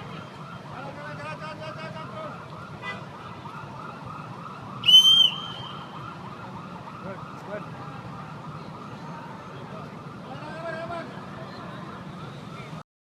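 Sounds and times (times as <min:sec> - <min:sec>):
siren yelping: 0:00.0 - 0:07.8.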